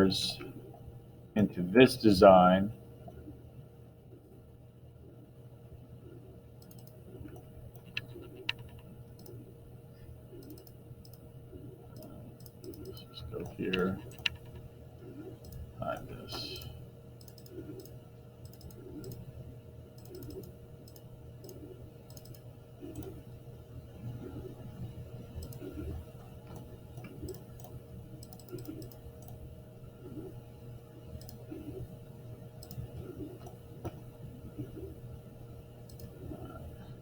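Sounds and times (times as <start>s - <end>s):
steady low hum: 0.0s - 37.0s
computer mouse clicking: 6.6s - 9.5s, 10.3s - 11.3s, 11.9s - 19.3s, 19.9s - 23.3s, 25.3s - 30.4s, 31.1s - 31.9s, 32.6s - 34.9s, 35.8s - 36.7s.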